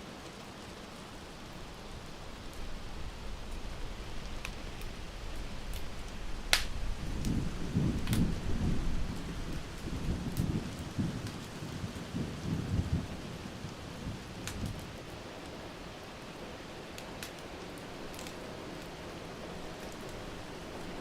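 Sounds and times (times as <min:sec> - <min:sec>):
steady rain: 0:00.0 - 0:21.0
wood fire crackling and popping: 0:00.2 - 0:21.0
low rumble of thunder: 0:01.4 - 0:16.5.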